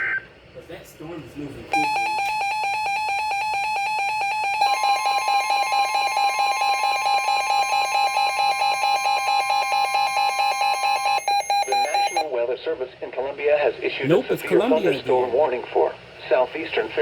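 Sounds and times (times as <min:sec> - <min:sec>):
steady warning alarm tone: 0:01.7 - 0:12.3
rapid pulsing beep: 0:01.8 - 0:12.2.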